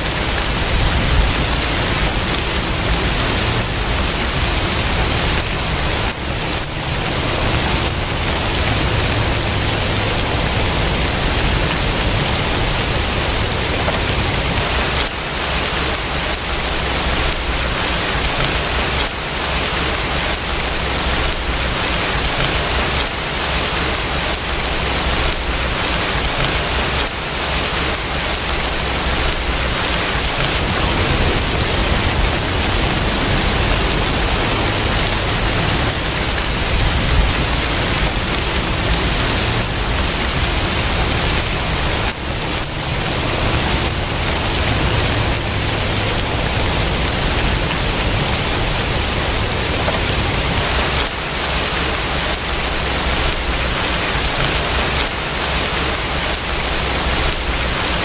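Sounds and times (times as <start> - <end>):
steady rain hiss: 0.0 - 58.0
low rumble: 28.7 - 50.7.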